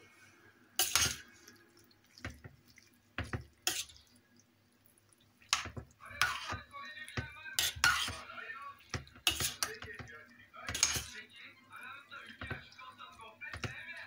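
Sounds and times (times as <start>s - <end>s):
water splashing and dripping: 0.8s - 6.5s.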